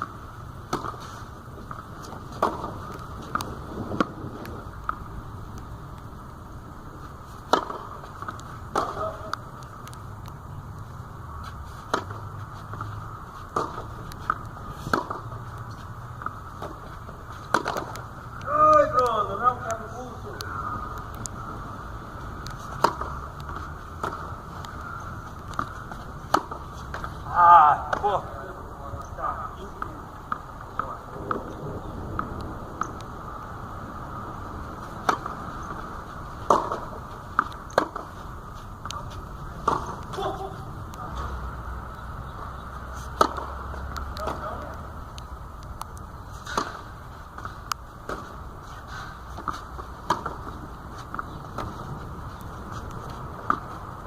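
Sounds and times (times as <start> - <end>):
tennis ball bouncing: 0.0 - 5.7, 7.0 - 10.0, 11.4 - 21.4, 22.1 - 28.3, 34.8 - 41.4, 42.3 - 45.2, 45.8 - 54.0
steady hiss: 0.0 - 54.0
racquet hitting tennis ball: 0.7 - 1.1, 1.7 - 4.2, 7.4 - 9.4, 11.9 - 12.8, 13.5 - 15.4, 16.2 - 19.4, 22.6 - 24.8, 25.5 - 28.3, 35.0 - 38.2, 39.6 - 40.4, 43.0 - 44.7, 46.4 - 51.8.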